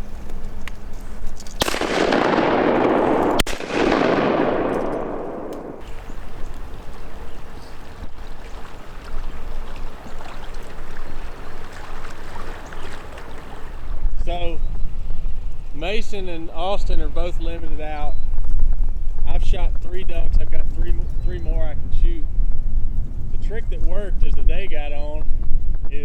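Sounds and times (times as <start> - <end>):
shotgun blasts with echo: 1.6 - 7.2.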